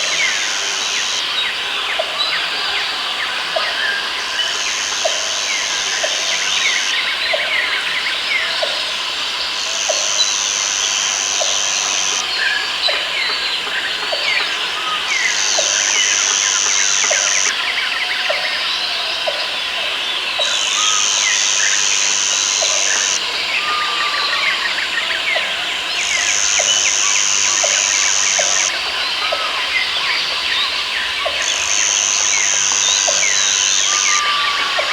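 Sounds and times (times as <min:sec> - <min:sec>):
high insect buzz: 0:08.8 - 0:12.2, 0:15.1 - 0:17.5, 0:20.5 - 0:23.2, 0:26.0 - 0:28.7, 0:31.4 - 0:34.2
birds chirping and whistling: 0:30.5 - 0:34.5.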